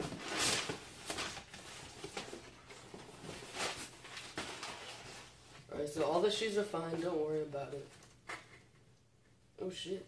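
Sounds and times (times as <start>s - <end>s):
cardboard and paper rustling: 0.0s - 5.7s.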